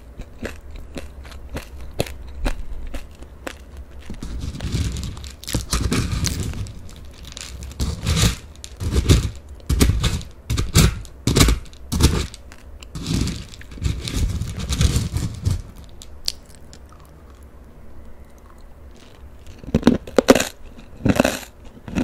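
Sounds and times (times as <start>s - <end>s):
crunchy corn puffs chewed: 0.0s - 9.7s, 11.6s - 22.0s
plastic wrapper crinkling: 3.9s - 9.1s.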